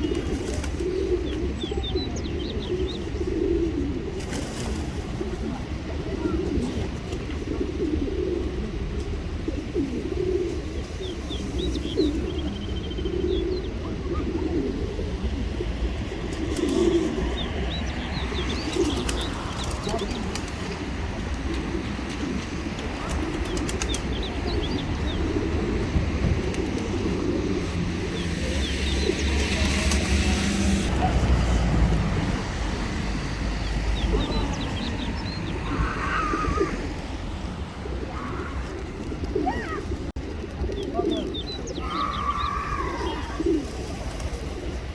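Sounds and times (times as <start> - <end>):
pigeons cooing: 0.0 - 44.9
wings flapping: 18.6 - 24.2.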